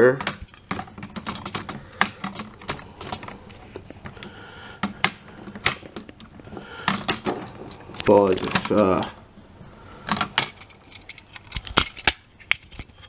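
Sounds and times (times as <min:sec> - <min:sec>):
plastic toy parts clicking: 0:00.1 - 0:06.3.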